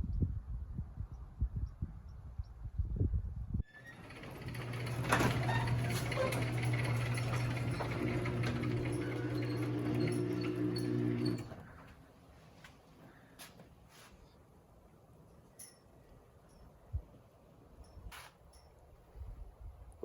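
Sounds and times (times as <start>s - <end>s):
door rattling along track: 3.7s - 11.8s
garage door motor hum: 3.7s - 11.9s.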